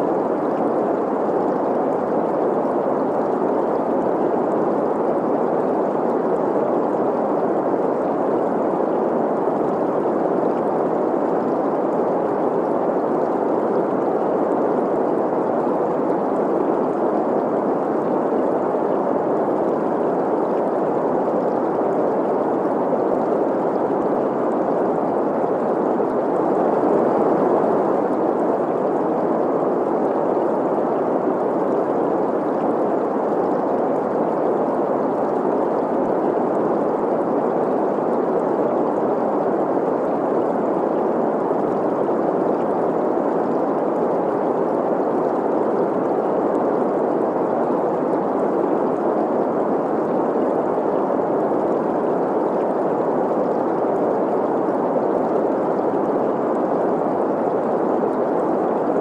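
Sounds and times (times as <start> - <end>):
flowing stream: 0.0 - 59.0.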